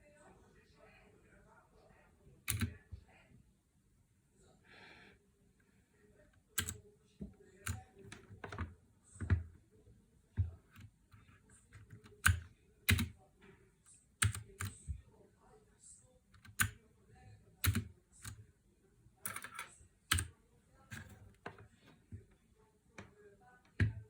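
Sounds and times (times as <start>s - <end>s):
mechanical keyboard typing clicks: 2.5s - 2.7s, 6.6s - 6.8s, 11.9s - 13.1s, 14.2s - 14.8s, 16.4s - 16.8s, 17.6s - 18.4s, 19.3s - 20.3s.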